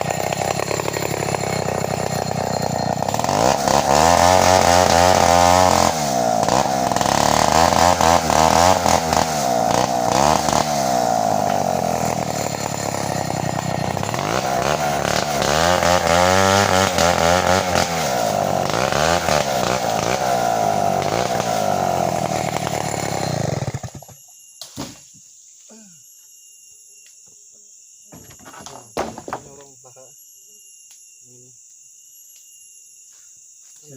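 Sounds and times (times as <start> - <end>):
chainsaw cutting wood: 0.0 - 25.0, 28.1 - 29.6
crickets chirping: 22.4 - 33.9.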